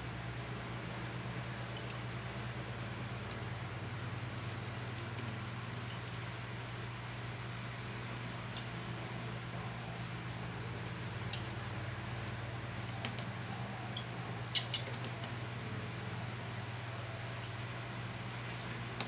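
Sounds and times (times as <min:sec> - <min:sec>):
steady low hum: 0:00.0 - 0:19.0
small tools clicking: 0:12.8 - 0:15.5.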